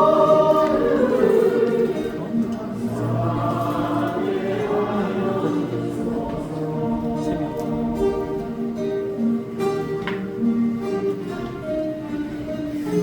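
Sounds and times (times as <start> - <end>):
choir singing gospel song: 0.0 - 9.4
guitar accompaniment: 0.0 - 13.0.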